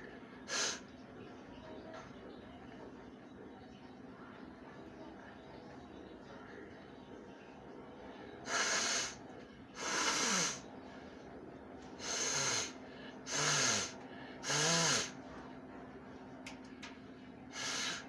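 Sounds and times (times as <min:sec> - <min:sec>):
woman blowing her nose: 0:00.5 - 0:00.8, 0:08.5 - 0:09.2, 0:09.8 - 0:10.6, 0:12.0 - 0:15.1, 0:17.6 - 0:18.0.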